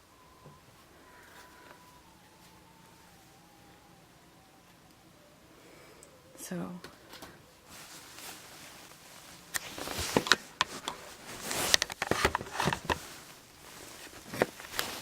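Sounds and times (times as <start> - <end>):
handling clicks knocks and rustling: 9.5 - 15.0.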